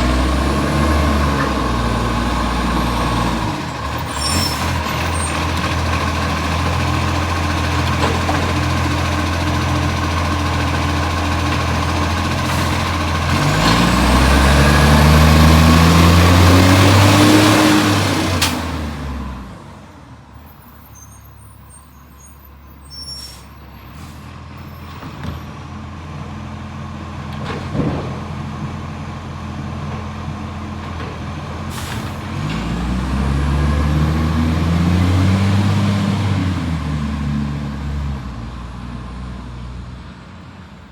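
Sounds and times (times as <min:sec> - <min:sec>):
truck diesel engine running: 0:00.0 - 0:20.6
air brake hisses: 0:20.8 - 0:24.3, 0:31.7 - 0:32.3.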